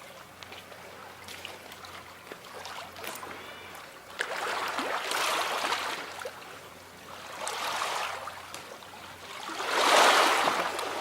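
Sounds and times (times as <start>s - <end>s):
sea waves washing onto shore: 9.3s - 11.0s.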